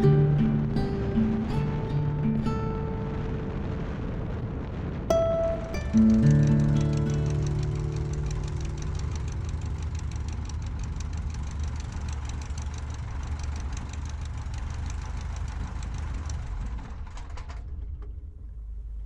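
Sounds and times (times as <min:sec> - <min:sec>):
aircraft piston engine running: 0:05.8 - 0:17.6.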